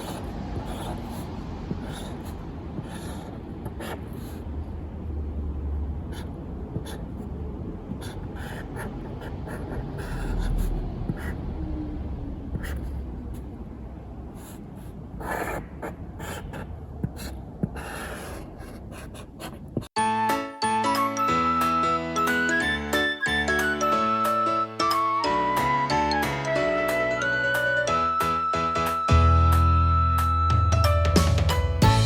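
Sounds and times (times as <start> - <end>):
low rumble: 9.9 - 14.4.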